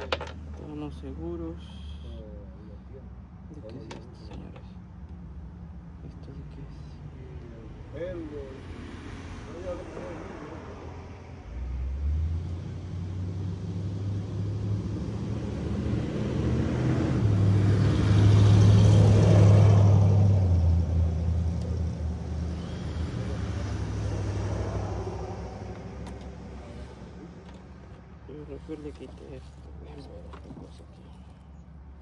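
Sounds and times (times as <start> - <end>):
vehicle passing by: 6.5 - 31.4.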